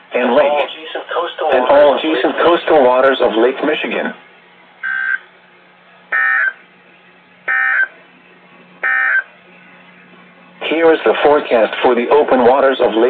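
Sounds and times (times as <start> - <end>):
faint low hum: 0.0 - 13.0
broadcast speech: 0.1 - 4.2, 10.6 - 13.0.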